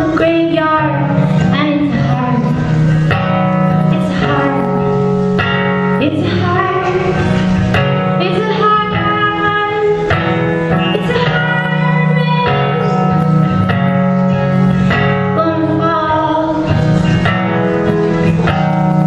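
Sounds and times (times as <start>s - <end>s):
woman singing folk song: 0.0s - 2.6s, 3.9s - 4.8s, 6.0s - 7.2s, 8.2s - 10.2s, 10.8s - 13.0s, 15.3s - 16.8s
acoustic guitar: 0.0s - 19.0s.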